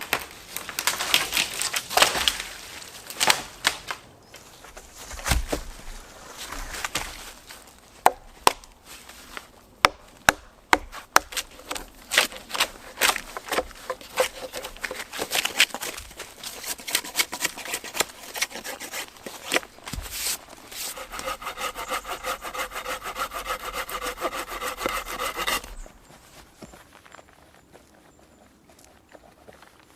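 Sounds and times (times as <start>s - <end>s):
hand saw cutting wood: 10.7s - 25.9s.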